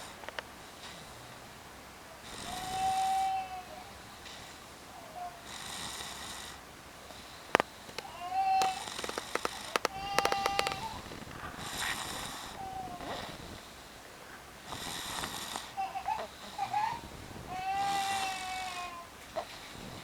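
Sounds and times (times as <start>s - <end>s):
boy snoring with whistling: 2.2s - 6.6s, 8.4s - 13.7s, 14.7s - 20.0s.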